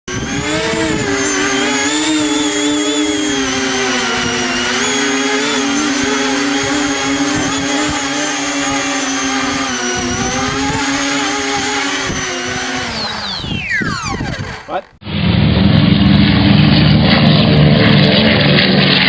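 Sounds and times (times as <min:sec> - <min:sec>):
model airplane motor whine: 0:00.0 - 0:19.0
wind rumble on microphone: 0:00.1 - 0:01.4, 0:13.3 - 0:18.6.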